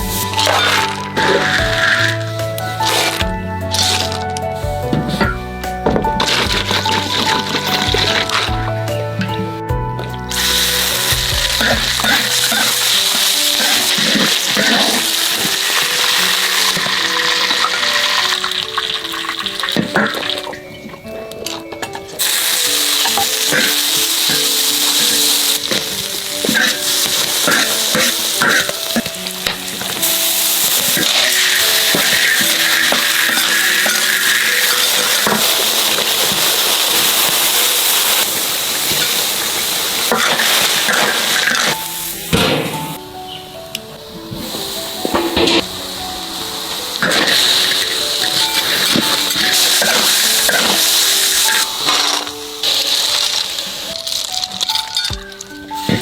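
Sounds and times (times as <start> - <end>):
food sizzling in a wok: 0.0 - 5.5, 6.1 - 9.5, 10.2 - 20.7, 22.1 - 43.3, 44.3 - 56.0
background music: 0.0 - 56.0
steady hiss: 22.1 - 56.0.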